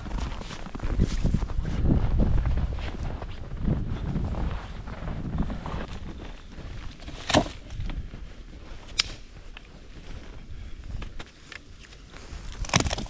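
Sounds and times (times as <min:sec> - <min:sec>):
footsteps crunching in snow: 0:00.0 - 0:12.8
dead sticks snapping: 0:06.9 - 0:08.0, 0:08.8 - 0:09.7, 0:12.5 - 0:13.0.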